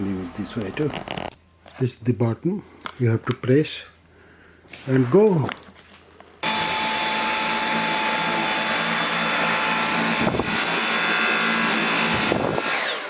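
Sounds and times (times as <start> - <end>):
vacuum cleaner whining: 6.4 - 13.0.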